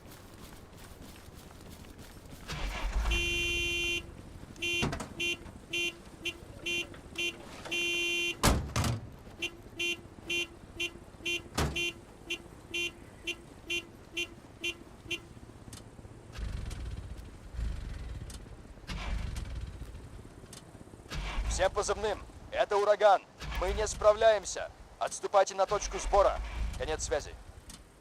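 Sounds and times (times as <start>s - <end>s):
vehicle horn beeping: 2.6s - 8.4s, 9.3s - 15.3s.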